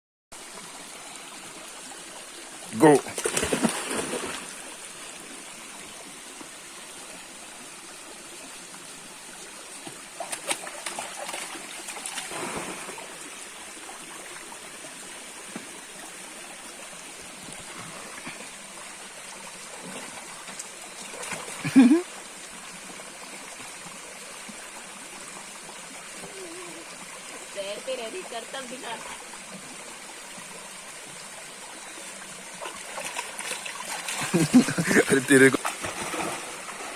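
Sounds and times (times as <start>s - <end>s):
stream water flowing: 0.3s - 36.9s
water splashing: 2.8s - 4.7s, 9.8s - 13.4s, 32.6s - 36.9s.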